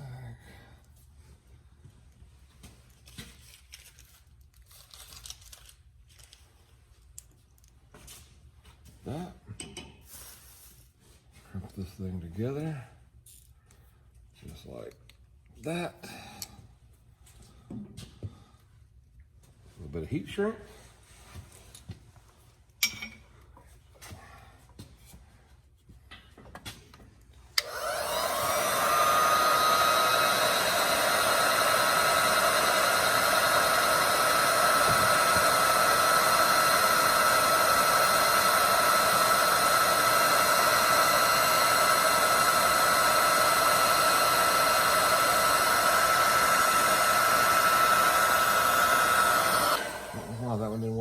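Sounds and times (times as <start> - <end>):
heat gun fan blowing whine: 27.5 - 51.0.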